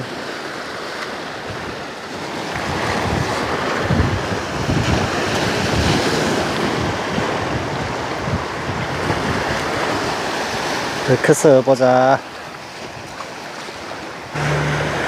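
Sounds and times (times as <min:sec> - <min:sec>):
sea waves washing: 0:00.0 - 0:15.0
wind buffeting microphone: 0:01.3 - 0:11.1.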